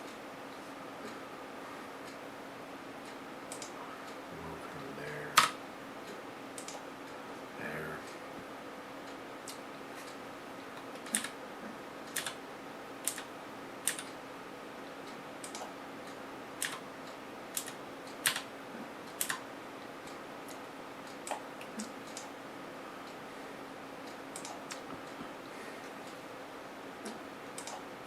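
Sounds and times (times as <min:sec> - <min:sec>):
faint steady hum: 0:00.0 - 0:28.0
computer mouse clicks: 0:03.5 - 0:03.8, 0:06.6 - 0:06.8, 0:10.8 - 0:11.3, 0:12.1 - 0:12.4, 0:13.0 - 0:14.2, 0:15.4 - 0:15.7, 0:16.6 - 0:16.8, 0:17.5 - 0:18.5, 0:19.1 - 0:19.4, 0:20.5 - 0:22.3, 0:24.1 - 0:25.3, 0:27.0 - 0:27.8.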